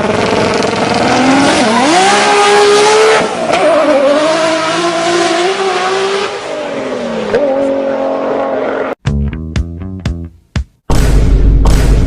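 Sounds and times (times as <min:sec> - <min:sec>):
engine revving: 0:00.0 - 0:09.0.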